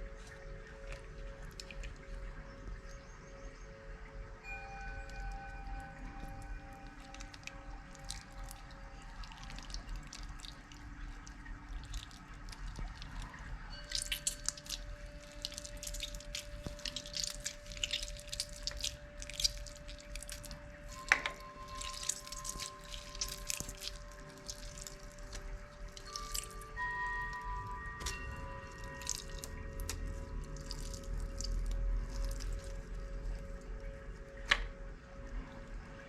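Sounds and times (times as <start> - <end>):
soft background music: 0.0 - 36.0
slime squished by hand: 7.0 - 33.6.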